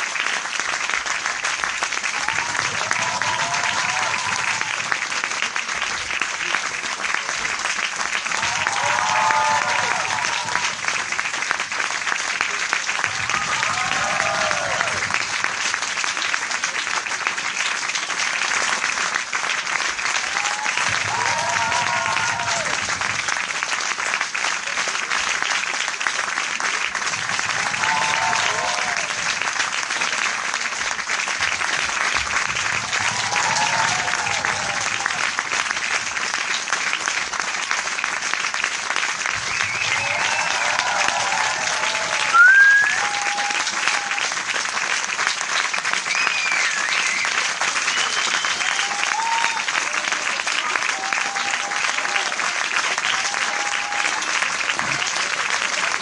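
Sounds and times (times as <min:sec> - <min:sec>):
crowd applauding: 0:00.0 - 0:56.0
person shouting or cheering: 0:08.4 - 0:10.7, 0:13.3 - 0:15.0, 0:40.2 - 0:44.2.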